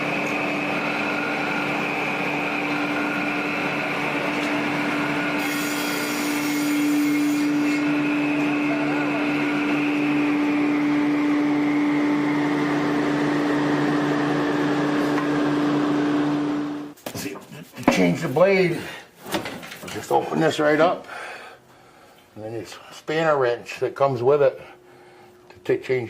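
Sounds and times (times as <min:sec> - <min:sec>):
power saw motor running: 0:00.0 - 0:16.9.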